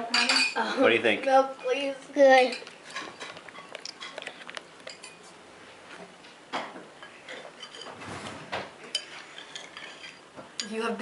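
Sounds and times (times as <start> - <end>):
spoons and dishes clinking: 2.5 - 5.2.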